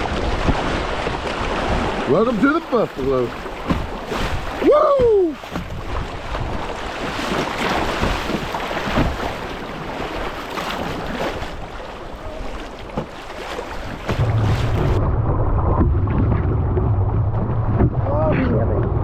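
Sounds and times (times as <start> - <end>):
river water rushing and splashing: 0.0 - 15.0
wind buffeting microphone: 3.2 - 10.0
person whooping: 4.6 - 5.4.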